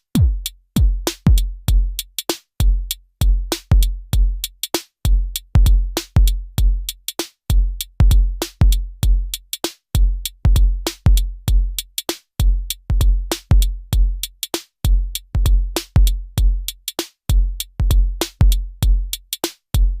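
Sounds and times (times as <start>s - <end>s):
deep synthesized kick drums: 0.1s - 2.0s, 2.6s - 4.5s, 5.1s - 6.9s, 7.5s - 9.4s, 10.0s - 11.8s, 12.4s - 14.3s, 14.9s - 16.7s, 17.3s - 19.2s.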